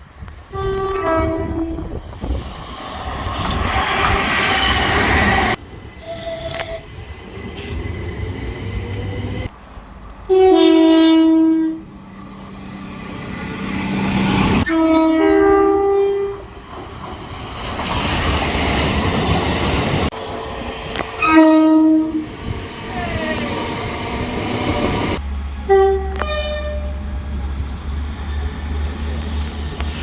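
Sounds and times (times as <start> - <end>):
passing train: 0.0 - 30.0
train horn blasts: 0.5 - 2.1, 10.3 - 12.0, 14.6 - 16.5, 21.2 - 22.3, 25.6 - 27.1.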